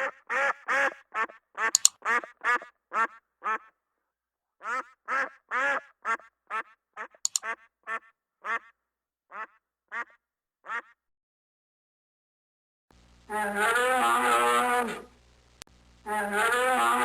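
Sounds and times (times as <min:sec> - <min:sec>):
duck quacking: 0:00.0 - 0:03.8, 0:04.6 - 0:11.0
sharp clicks: 0:01.7 - 0:02.0, 0:07.3 - 0:07.5.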